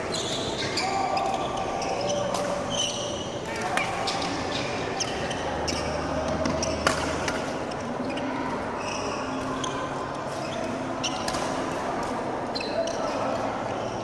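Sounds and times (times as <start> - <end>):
shoes squeaking on court floor: 0.0 - 3.4, 8.0 - 11.4
rackets hitting shuttlecock: 6.3 - 7.5, 10.3 - 12.2.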